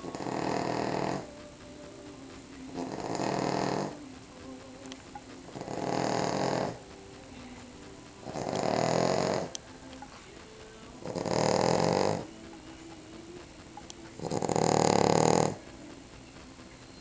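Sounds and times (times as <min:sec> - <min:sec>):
dog snoring: 0:00.0 - 0:01.5, 0:02.6 - 0:04.1, 0:05.4 - 0:12.6, 0:14.0 - 0:16.0.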